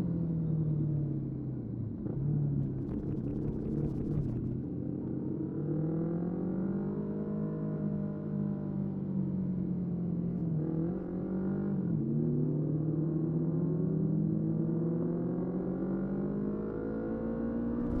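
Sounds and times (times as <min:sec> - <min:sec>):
motorcycle engine accelerating: 0:02.6 - 0:04.6, 0:17.6 - 0:18.0.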